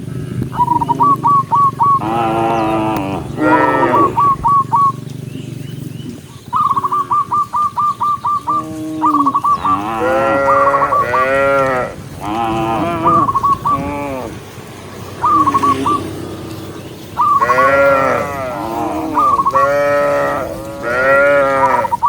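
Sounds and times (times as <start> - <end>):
bird calling high notes: 0.5 - 22.0
cattle mooing: 1.9 - 4.8, 8.4 - 22.0.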